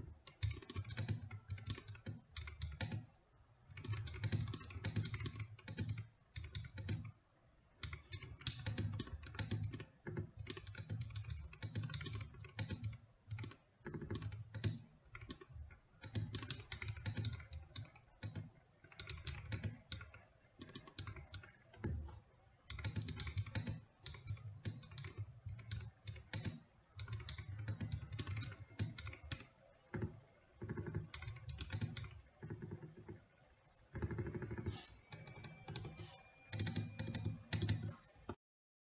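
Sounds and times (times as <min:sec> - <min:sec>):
mechanical keyboard typing: 0:00.0 - 0:07.2, 0:07.8 - 0:33.3, 0:33.9 - 0:38.4.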